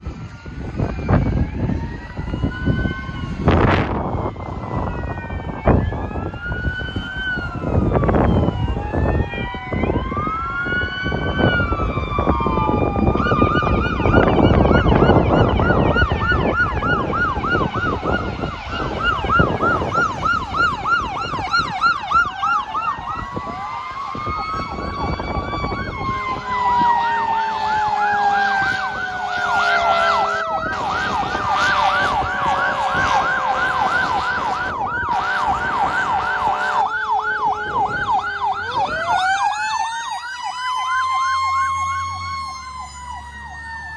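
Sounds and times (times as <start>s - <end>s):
electronic sirens yelping: 0.0s - 43.9s
truck engine and road rumble: 0.0s - 43.9s
wailing siren: 0.0s - 43.9s
fire truck air horn blasts: 26.1s - 38.6s.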